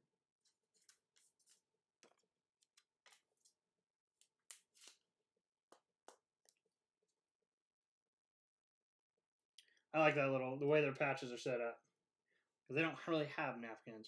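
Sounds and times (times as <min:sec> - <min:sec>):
trading cards rustling and clicking: 0:00.5 - 0:05.0.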